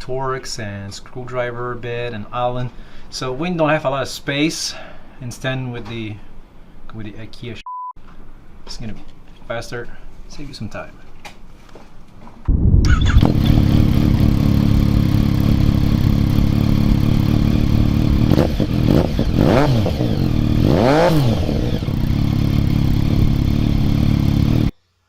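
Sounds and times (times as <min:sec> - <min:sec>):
engine revving: 0:12.8 - 0:24.7
motorcycle engine idling: 0:13.3 - 0:24.7.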